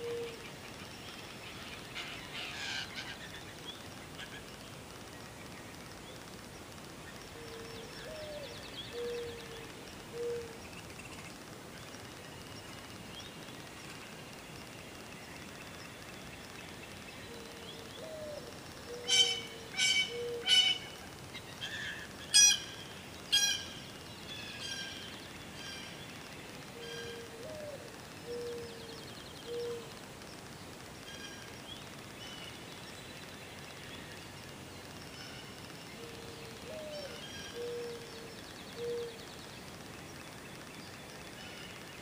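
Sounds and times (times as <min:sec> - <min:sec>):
loud sharp bird calls: 0:00.0 - 0:04.5, 0:17.2 - 0:30.0.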